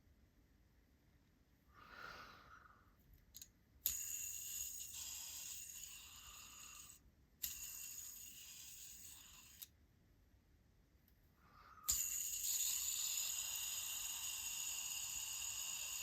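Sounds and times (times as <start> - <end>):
fidget spinner whirring: 3.8 - 9.7, 11.8 - 16.0.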